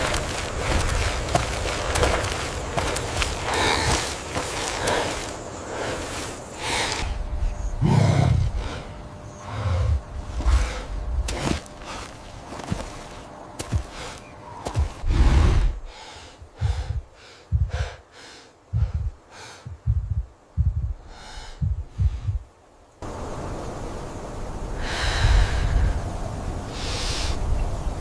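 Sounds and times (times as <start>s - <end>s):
steady rumbling: 0.0s - 23.5s
low thuds: 13.6s - 18.0s, 18.7s - 22.5s.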